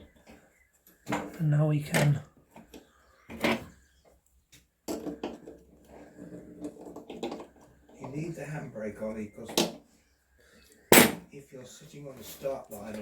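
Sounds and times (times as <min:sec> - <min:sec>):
clunking and rattling of parts: 0:04.8 - 0:08.3.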